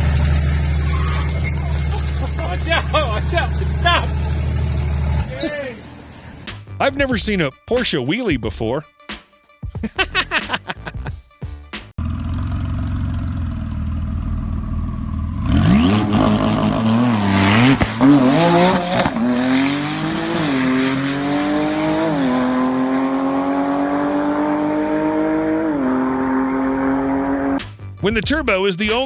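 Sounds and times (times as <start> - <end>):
car engine revving: 15.4 - 27.6.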